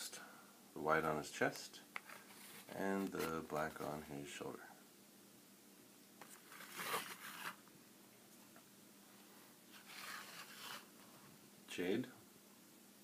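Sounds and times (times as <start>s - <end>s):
plastic figures scraping rustles: 6.2s - 7.6s, 9.7s - 10.9s.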